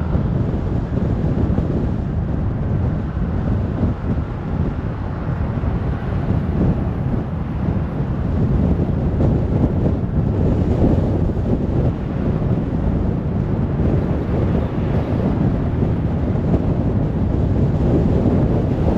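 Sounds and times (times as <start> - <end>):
road and wind noise: 0.0 - 18.9.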